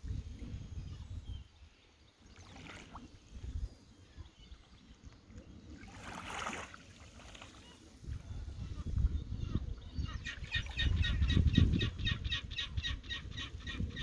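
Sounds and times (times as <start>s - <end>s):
sea water lapping: 2.2s - 3.9s, 4.6s - 11.3s
distant seagull calls: 7.4s - 14.0s.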